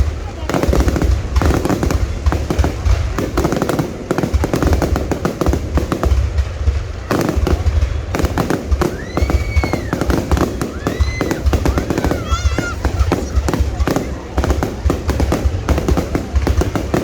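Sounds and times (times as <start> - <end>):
fireworks crackling and popping: 0.0 - 17.0
firework whistle: 6.8 - 17.0.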